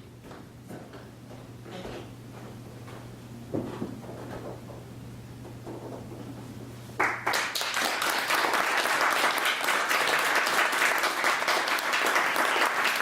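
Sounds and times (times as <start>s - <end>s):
audience applause: 7.0s - 13.0s.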